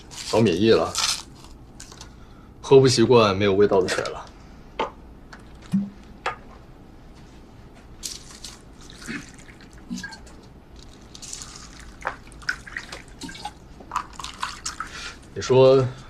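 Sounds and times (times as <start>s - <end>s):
tea pouring into cups: 8.4s - 15.3s.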